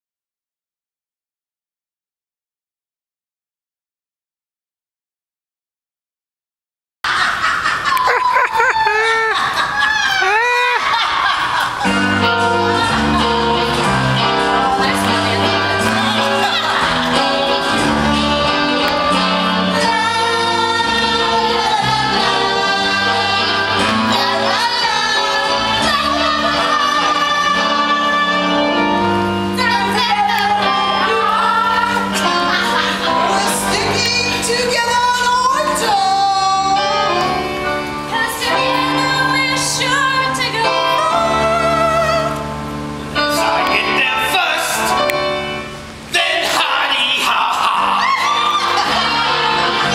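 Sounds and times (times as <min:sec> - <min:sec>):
women singing: 0:10.1 - 0:42.6, 0:46.2 - 0:49.9
instrumental accompaniment: 0:11.8 - 0:46.1.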